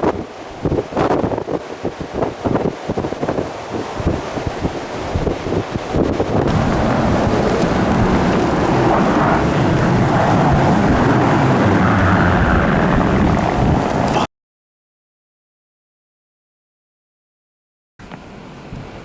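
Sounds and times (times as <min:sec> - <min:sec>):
blizzard wind on microphone: 0:00.0 - 0:14.3.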